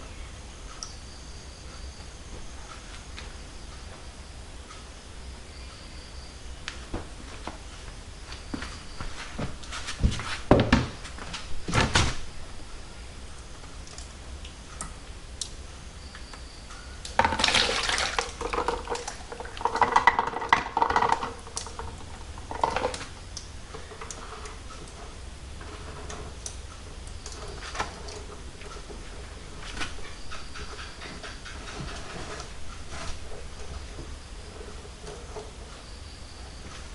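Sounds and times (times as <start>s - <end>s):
parts being handled knocking: 9.4s - 12.1s, 17.1s - 36.9s
liquid pouring and sloshing: 17.2s - 23.1s.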